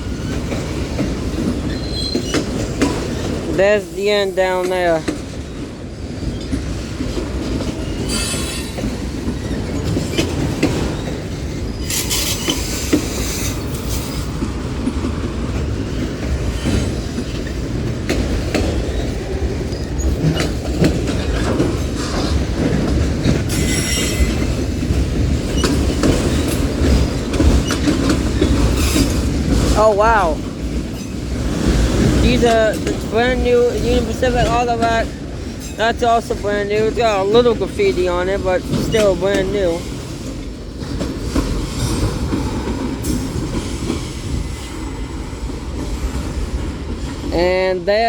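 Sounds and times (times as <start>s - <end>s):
train wheels rumbling on rail: 0.0s - 48.0s
clicks at rail joints: 14.4s - 29.8s.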